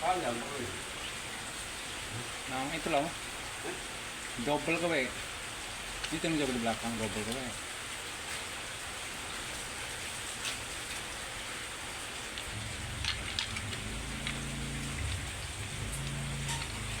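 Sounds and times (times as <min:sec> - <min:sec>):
rain-like hiss: 0:00.0 - 0:17.0
low engine-like hum: 0:12.5 - 0:17.0.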